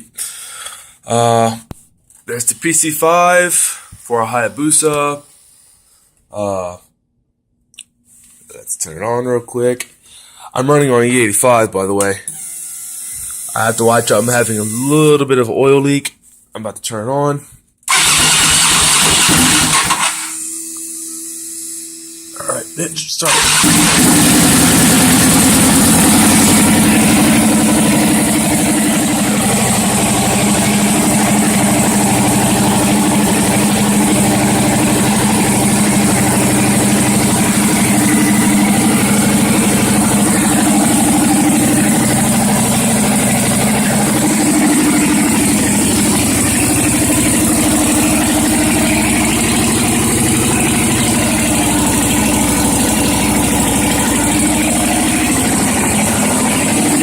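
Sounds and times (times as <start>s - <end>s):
motorcycle engine idling: 23.3s - 57.0s.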